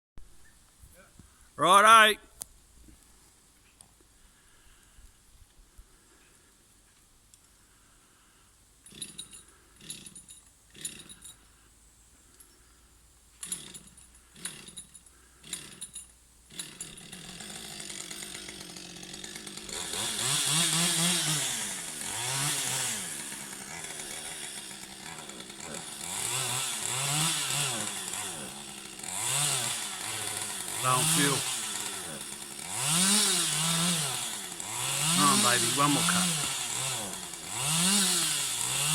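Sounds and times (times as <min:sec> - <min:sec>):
chainsaw engine revving: 0:08.8 - 0:11.4, 0:13.4 - 0:38.9
chainsaw starter cord tugs: 0:08.8 - 0:11.6, 0:12.3 - 0:38.9.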